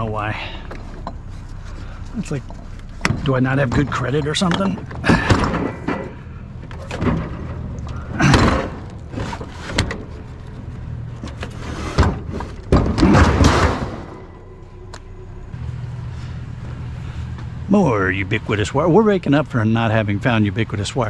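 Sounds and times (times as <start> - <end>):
steady low hum: 0.0 - 21.0
scrap metal knocking and clattering: 0.7 - 15.4.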